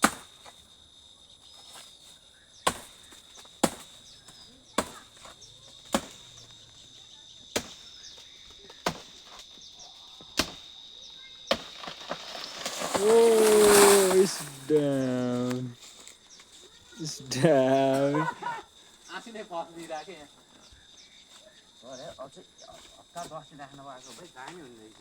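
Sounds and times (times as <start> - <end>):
blade chopping plant stem: 0.0 - 0.5, 2.7 - 4.0, 5.9 - 6.3
high insect drone: 0.0 - 25.0.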